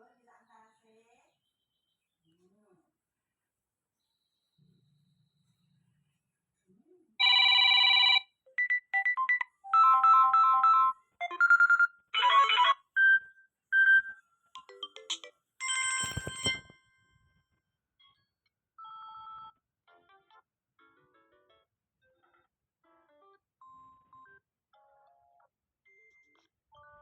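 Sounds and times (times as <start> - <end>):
electronic ringtone melodies and chimes: 7.2 - 16.7.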